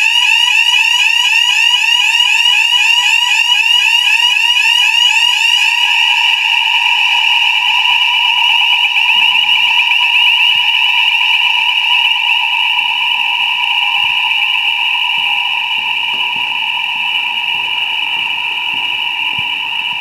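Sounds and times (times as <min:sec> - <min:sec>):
fire alarm warbling tone: 0:00.0 - 0:20.0.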